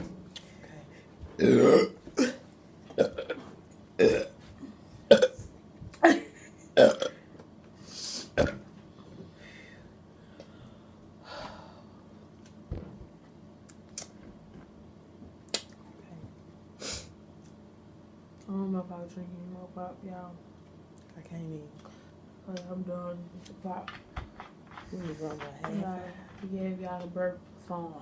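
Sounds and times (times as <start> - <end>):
person burping: 1.4 - 3.4, 4.0 - 7.3, 8.3 - 8.7.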